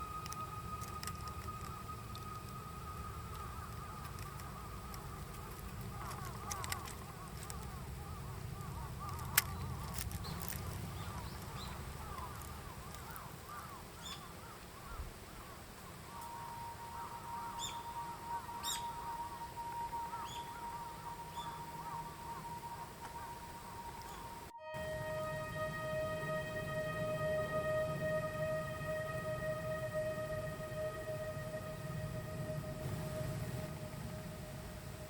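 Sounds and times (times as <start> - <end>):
low rumble: 0.0 - 13.1, 16.3 - 35.0
steady held music tone: 0.0 - 13.7, 16.1 - 35.0
bird calls: 0.0 - 24.5.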